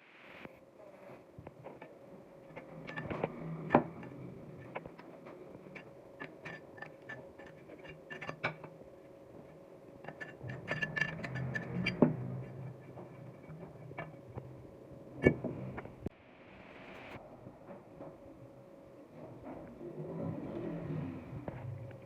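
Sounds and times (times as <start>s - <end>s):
metal parts clinking on hard surface: 5.7s - 8.8s, 10.0s - 14.1s.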